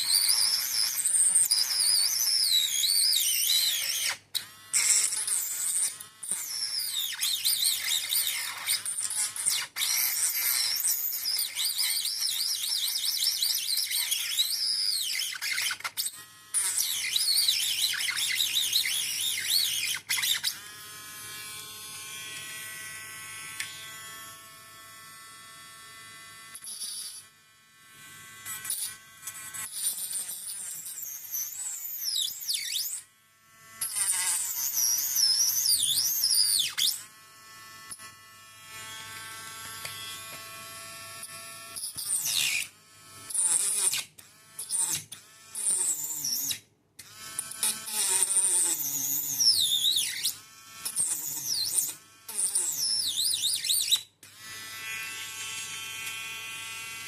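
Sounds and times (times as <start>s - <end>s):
shrill screech of cutting plastic: 0.0s - 20.6s, 29.7s - 33.0s, 33.8s - 37.0s, 41.8s - 42.7s, 43.3s - 46.6s, 47.6s - 54.1s.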